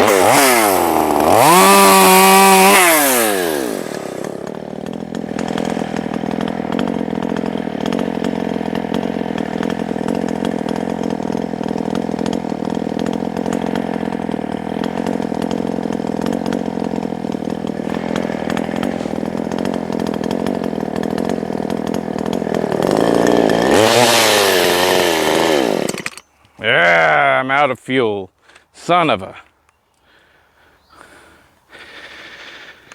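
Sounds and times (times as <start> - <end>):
chainsaw running at high revs: 0.0 - 26.2.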